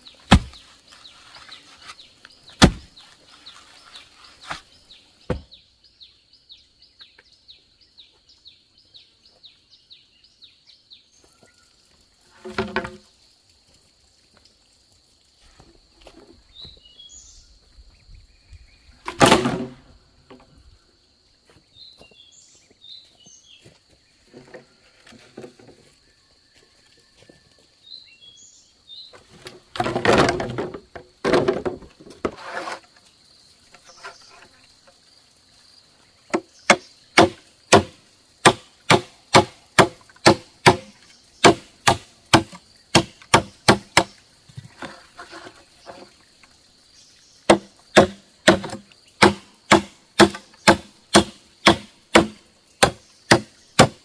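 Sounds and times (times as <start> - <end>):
blade chopping bamboo: 0.2 - 0.6, 2.6 - 2.9, 19.1 - 19.8, 36.3 - 44.2, 47.5 - 54.0.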